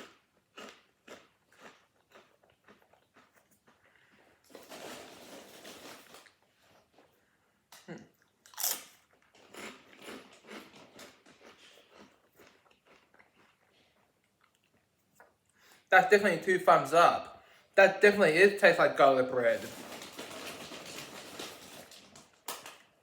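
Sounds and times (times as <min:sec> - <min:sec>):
potato chips crunching: 0:00.0 - 0:06.9, 0:08.5 - 0:15.4, 0:19.3 - 0:23.0.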